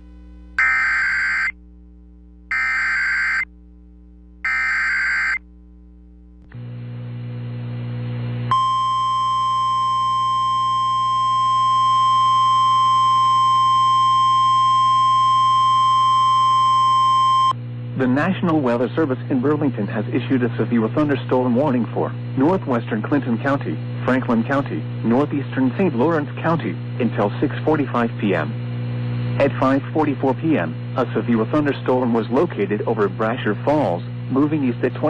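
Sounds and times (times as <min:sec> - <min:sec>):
low hum: 0:00.0 - 0:32.4
steady single-pitch attention tone: 0:00.5 - 0:01.6, 0:02.5 - 0:03.6, 0:04.4 - 0:05.4, 0:08.5 - 0:17.6
warbling digital data tones: 0:00.6 - 0:01.6, 0:02.5 - 0:03.5, 0:04.5 - 0:05.4.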